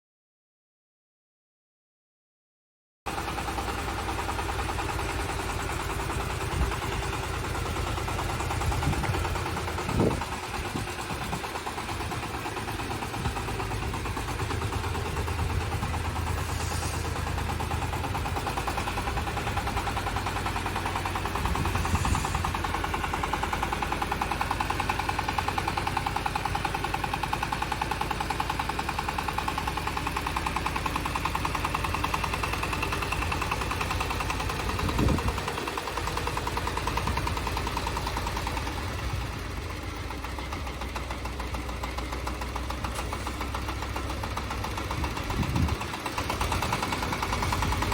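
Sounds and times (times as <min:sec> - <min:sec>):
tractor engine running: 0:03.1 - 0:47.9.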